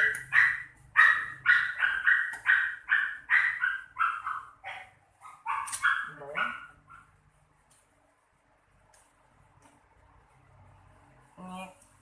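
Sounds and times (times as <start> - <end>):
puppy yapping: 0.0 - 7.1.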